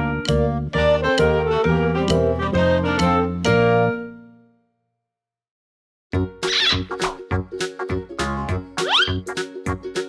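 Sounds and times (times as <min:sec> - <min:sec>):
bouncy children's background music: 0:00.0 - 0:04.3, 0:06.2 - 0:10.0.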